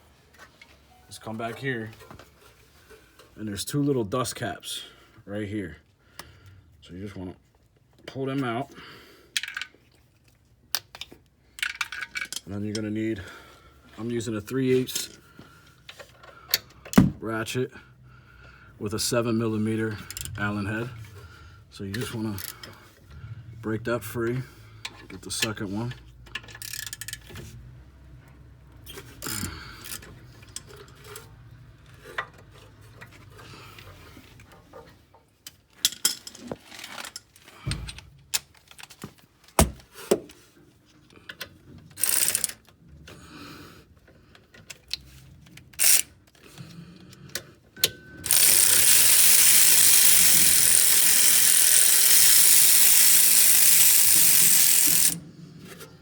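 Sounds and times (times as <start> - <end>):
ratchet and tools clicking: 19.9 - 21.3, 24.8 - 27.6, 28.8 - 33.9, 41.8 - 42.7, 44.7 - 46.4, 48.2 - 55.2.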